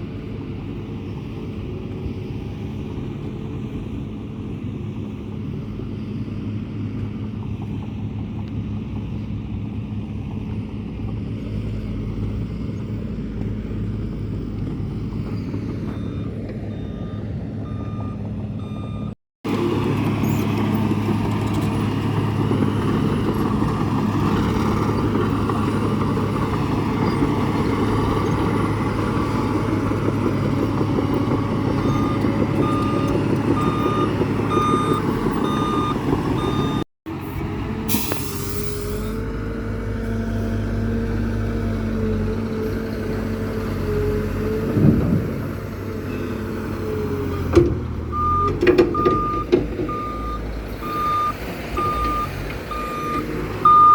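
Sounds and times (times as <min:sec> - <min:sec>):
heavy vehicle engine running: 0:00.0 - 0:53.9
reversing alarm beeping: 0:31.8 - 0:36.8, 0:48.1 - 0:53.9.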